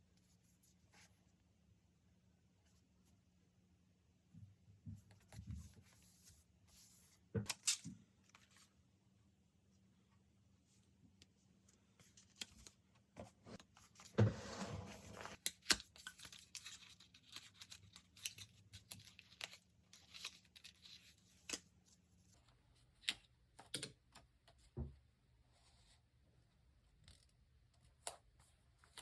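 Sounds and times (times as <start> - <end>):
paper rustling and crinkling: 12.0 - 21.7.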